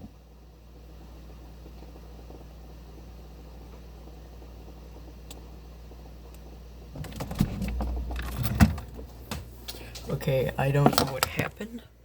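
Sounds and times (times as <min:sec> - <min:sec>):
refrigerator hum: 0:00.0 - 0:12.0
fridge door opening: 0:06.9 - 0:11.6
items rattling and bumping: 0:07.0 - 0:11.6.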